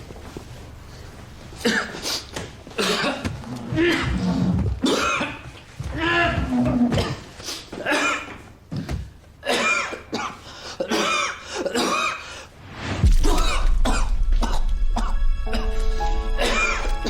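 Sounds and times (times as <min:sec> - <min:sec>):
man coughing harshly: 0:01.6 - 0:02.1, 0:02.8 - 0:03.3, 0:04.8 - 0:05.5, 0:07.0 - 0:08.4, 0:09.4 - 0:12.4, 0:13.3 - 0:16.9
low background music: 0:12.9 - 0:17.0.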